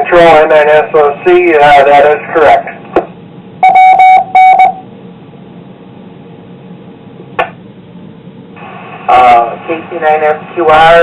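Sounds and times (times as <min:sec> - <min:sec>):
radio hiss: 0:00.0 - 0:03.0, 0:08.6 - 0:11.0
short loud beeps: 0:03.6 - 0:04.8.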